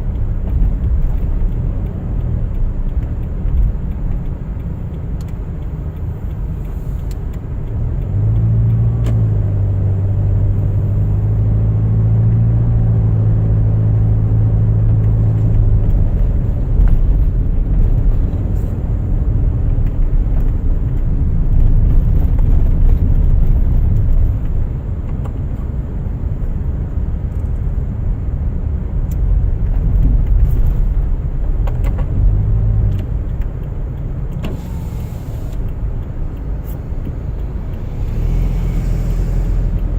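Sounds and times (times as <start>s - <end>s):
car engine and road rumble: 0.0s - 39.9s
low engine drone: 34.4s - 39.9s.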